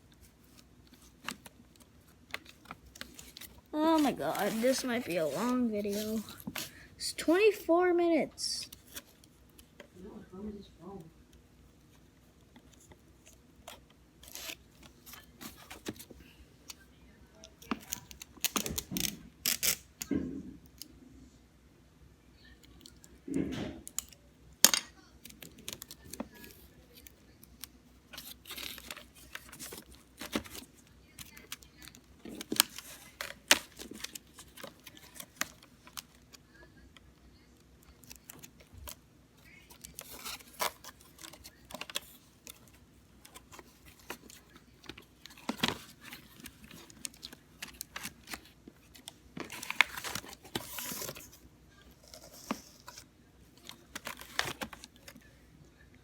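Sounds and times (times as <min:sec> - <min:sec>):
cardboard rustling and clicking: 0:00.5 - 0:06.6, 0:28.2 - 0:36.4, 0:39.7 - 0:51.4, 0:53.6 - 0:55.2
cardboard tearing: 0:03.0 - 0:06.4.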